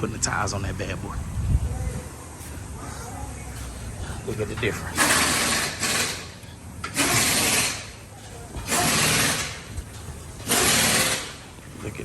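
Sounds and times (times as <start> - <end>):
pneumatic tool hissing bursts: 5.0 - 8.0, 8.6 - 9.6, 10.4 - 11.4.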